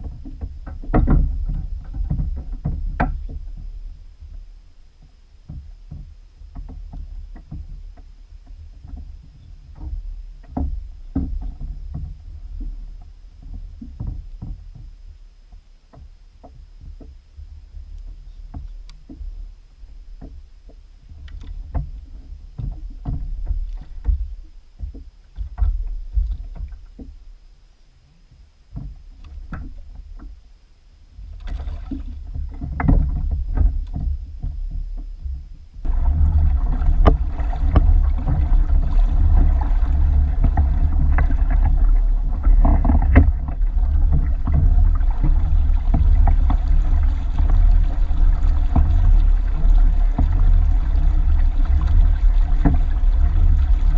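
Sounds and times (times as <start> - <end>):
knocks and clicks on kayak: 0.0 - 3.7, 28.7 - 30.4, 31.4 - 53.9
low rumble: 28.4 - 53.9.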